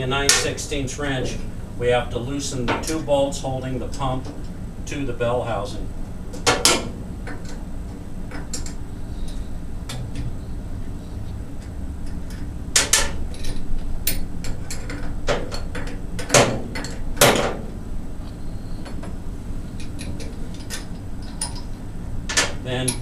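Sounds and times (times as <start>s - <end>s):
low background hum: 0.0s - 23.0s.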